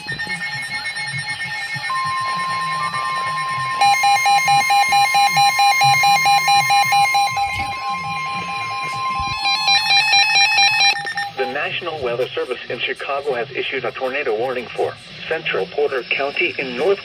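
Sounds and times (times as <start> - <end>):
rapid alarm beeping: 0.0 - 12.0
weather alert tone: 1.9 - 11.7.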